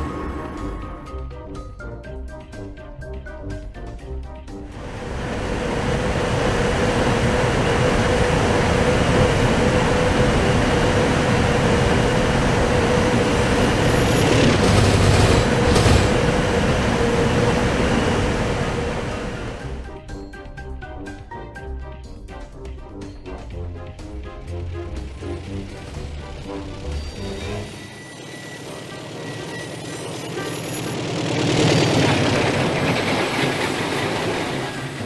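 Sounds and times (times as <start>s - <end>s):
train passing at speed: 4.6s - 20.0s, 24.4s - 35.0s
steady hum: 4.7s - 19.8s.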